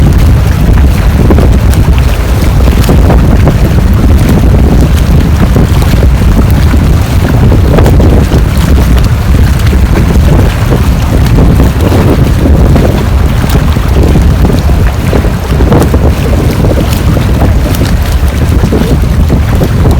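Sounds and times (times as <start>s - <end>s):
wind buffeting microphone: 0.0s - 19.9s.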